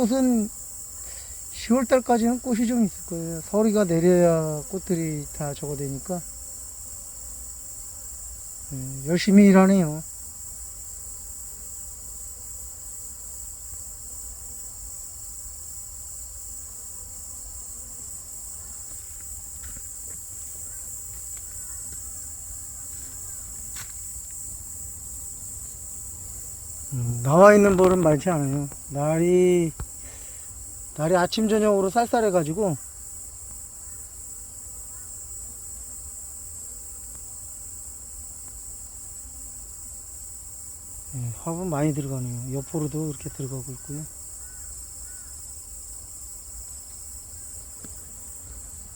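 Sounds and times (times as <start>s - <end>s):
insects chirring: 0.0s - 48.9s.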